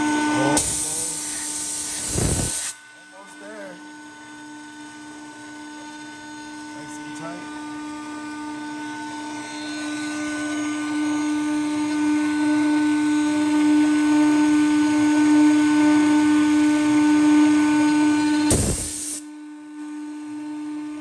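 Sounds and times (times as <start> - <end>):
router spindle whining: 0.0 - 18.8
bit cutting wood: 0.6 - 2.8.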